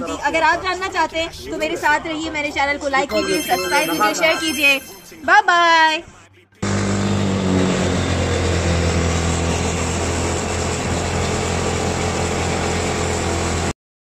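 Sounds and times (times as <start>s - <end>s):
vehicle engine running: 6.6s - 13.7s.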